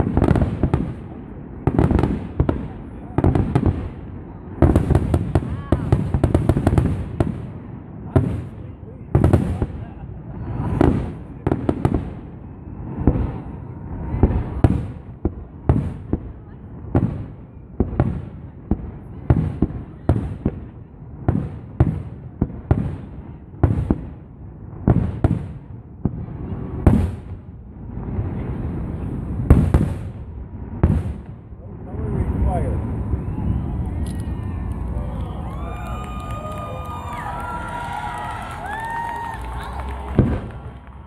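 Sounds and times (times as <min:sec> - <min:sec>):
fireworks bursting with echo: 0:00.0 - 0:41.0.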